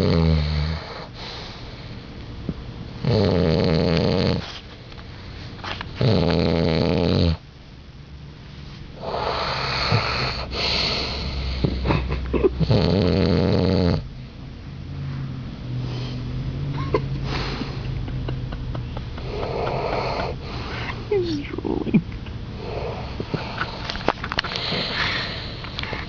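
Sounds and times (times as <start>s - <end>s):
loud snoring: 0.0s - 1.1s, 3.0s - 4.4s, 6.0s - 7.4s, 9.0s - 11.8s, 12.6s - 14.1s, 19.2s - 20.7s.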